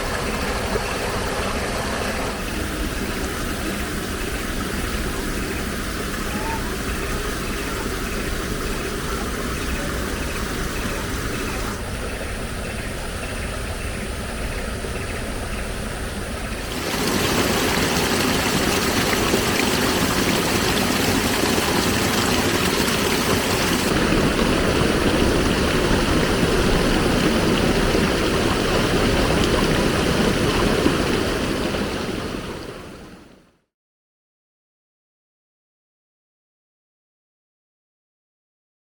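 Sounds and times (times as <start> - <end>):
river water rushing: 0.0 - 11.8, 16.6 - 33.3.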